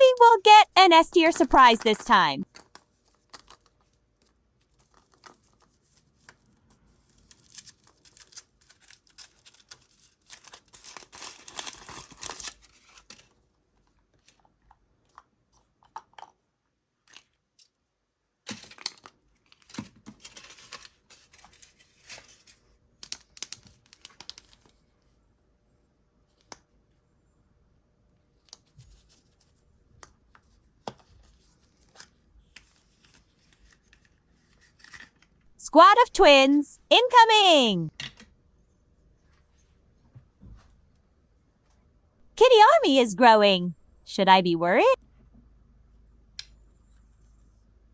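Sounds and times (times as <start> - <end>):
wrapper tearing and crinkling: 7.1 - 13.3.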